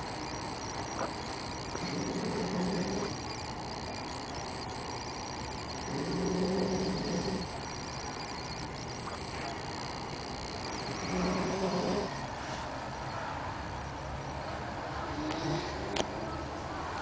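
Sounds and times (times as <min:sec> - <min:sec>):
person snoring: 0:01.8 - 0:03.1, 0:05.9 - 0:07.6.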